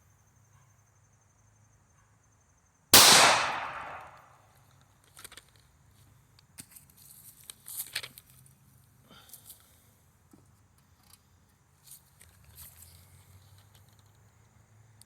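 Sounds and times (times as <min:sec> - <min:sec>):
gunshot: 0:03.0 - 0:04.2.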